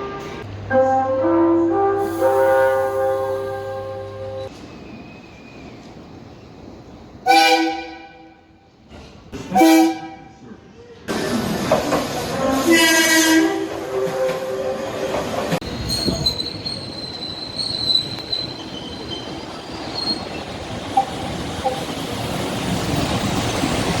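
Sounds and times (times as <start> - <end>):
train horn: 0.0 - 4.5, 7.2 - 8.4, 9.5 - 10.4, 12.4 - 15.4
train wheels rolling: 11.1 - 24.0
high-pitched wheel squeal: 15.6 - 20.5.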